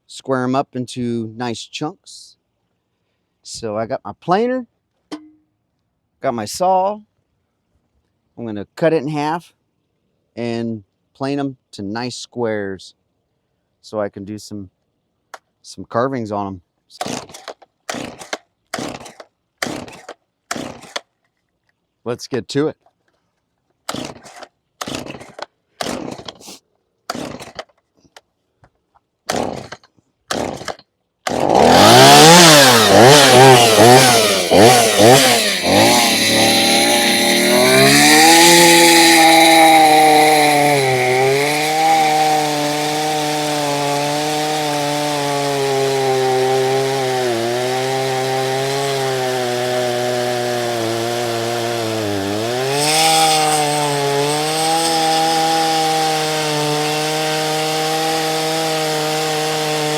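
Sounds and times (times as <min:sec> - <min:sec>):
chainsaw cutting through log: 0:16.9 - 0:21.1, 0:23.9 - 0:27.8, 0:29.3 - 0:59.9
chainsaw starter cord pulls: 0:16.9 - 0:21.4, 0:23.8 - 0:28.2, 0:29.3 - 0:59.9
chainsaw revving: 0:17.0 - 0:21.0, 0:23.9 - 0:27.7, 0:29.3 - 0:59.9.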